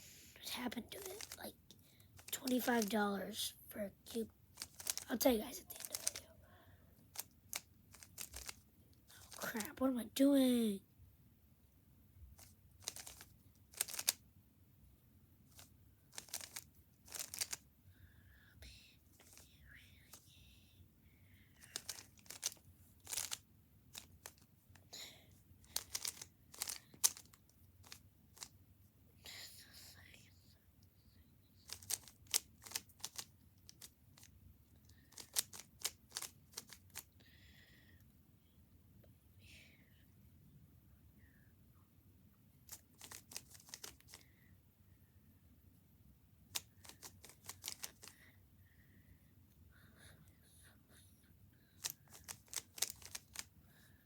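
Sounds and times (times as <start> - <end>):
plastic puzzle cube clicking: 1.0 - 1.4, 2.2 - 2.9, 4.6 - 5.1, 5.7 - 6.2, 7.1 - 8.6, 9.2 - 9.4, 12.4 - 14.2, 15.5 - 17.6, 19.2 - 19.4, 21.6 - 24.8, 25.6 - 28.5, 31.6 - 34.3, 35.0 - 37.1, 42.7 - 44.2, 46.5 - 48.1, 51.8 - 53.5
plastic scraping rattles: 4.6 - 5.1, 21.7 - 24.4.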